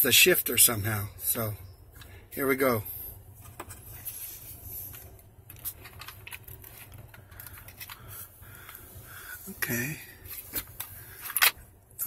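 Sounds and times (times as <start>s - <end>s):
steady low hum: 0.0s - 12.0s
small clicks and metallic rattles: 5.4s - 8.8s.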